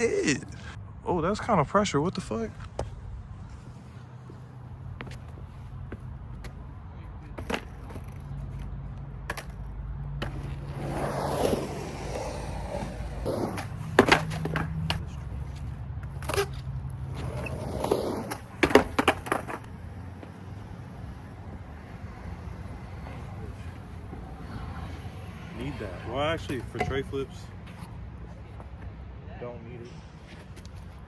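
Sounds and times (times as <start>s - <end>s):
skateboard rolling: 7.4s - 29.0s
skateboard tail clacks: 9.2s - 20.5s.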